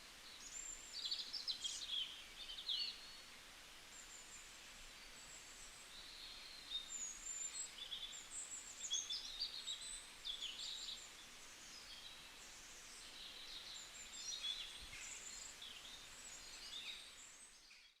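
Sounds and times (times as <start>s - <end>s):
faint steady hiss: 0.0s - 18.0s
small birds chirping and trilling: 3.9s - 18.0s.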